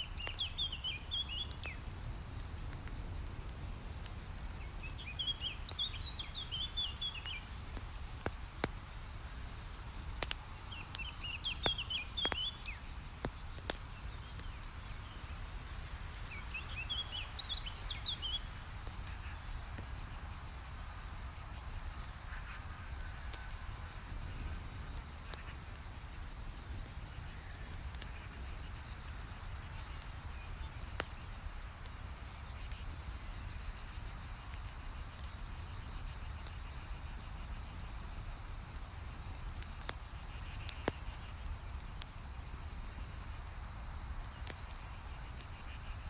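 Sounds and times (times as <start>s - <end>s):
songbird singing: 0.0s - 2.2s, 4.1s - 8.7s, 9.5s - 25.7s
campfire crackling and popping: 0.0s - 46.0s.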